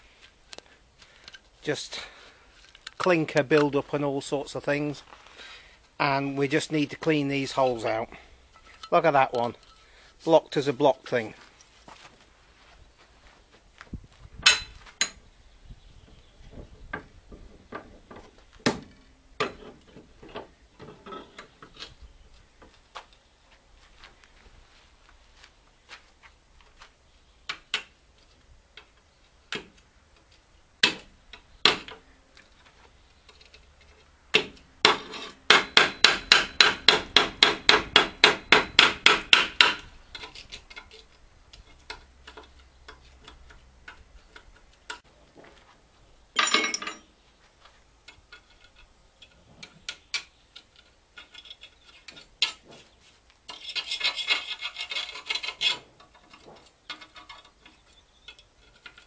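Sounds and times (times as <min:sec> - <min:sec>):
hand tool rasping on metal: 0:53.5 - 0:59.0.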